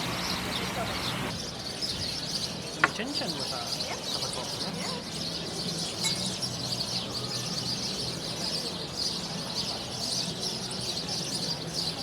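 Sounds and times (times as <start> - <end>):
people chattering: 0.0 - 1.7
small birds chirping: 0.0 - 12.0.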